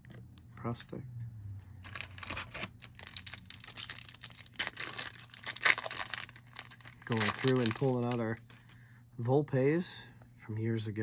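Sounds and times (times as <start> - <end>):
foil wrappers tearing and crinkling: 1.9 - 8.5.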